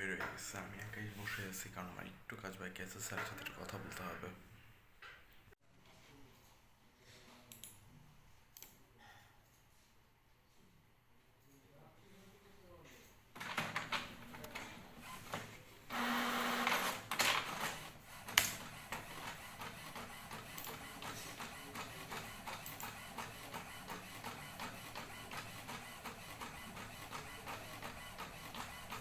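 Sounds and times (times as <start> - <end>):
printer whirring: 13.4 - 29.0
printer rapid ticking: 15.9 - 29.0.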